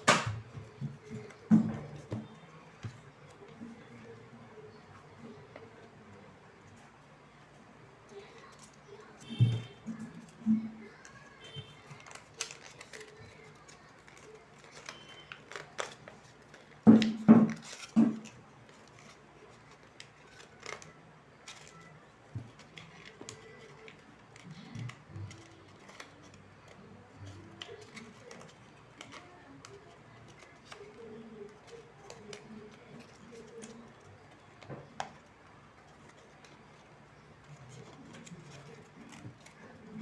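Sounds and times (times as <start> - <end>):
paper rustling: 0.0 - 40.0
scissors snipping paper: 11.9 - 21.9.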